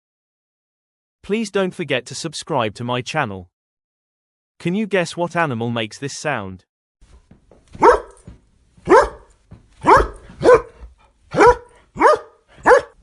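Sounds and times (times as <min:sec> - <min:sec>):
dog barking: 0:07.8 - 0:13.0.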